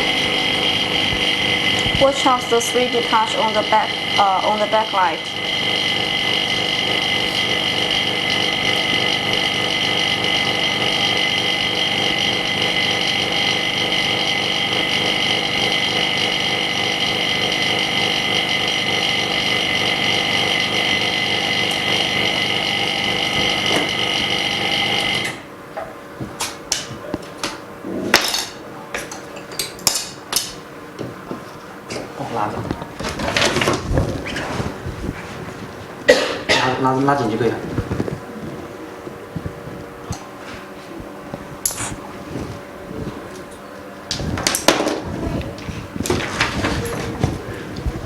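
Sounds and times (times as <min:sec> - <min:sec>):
machine electric hum: 0:00.0 - 0:48.0.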